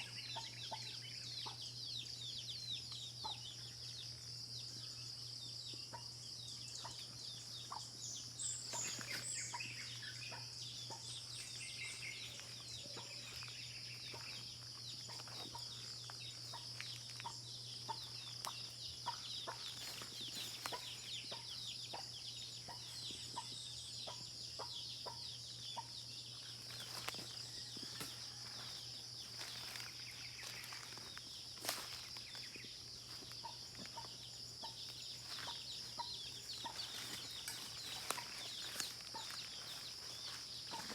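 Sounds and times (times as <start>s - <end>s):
bird chirps: 0.0s - 40.9s.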